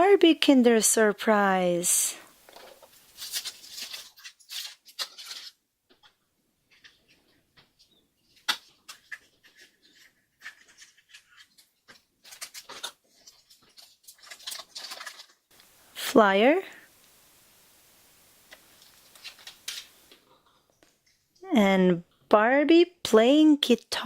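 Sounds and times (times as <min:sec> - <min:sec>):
wrapper crinkling: 0:02.4 - 0:05.5, 0:12.2 - 0:20.2.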